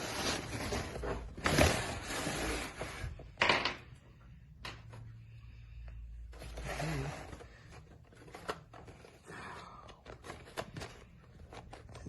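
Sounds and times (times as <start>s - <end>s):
packaging rustling and scraping: 0.0s - 3.2s, 6.3s - 9.3s, 9.9s - 12.0s.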